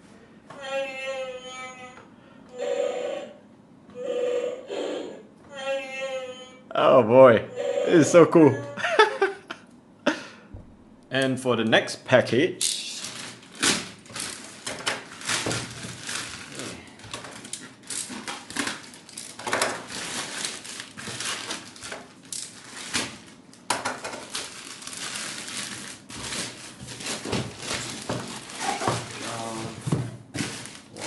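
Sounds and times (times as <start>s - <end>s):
cardboard and plastic crinkling: 13.0s - 31.0s.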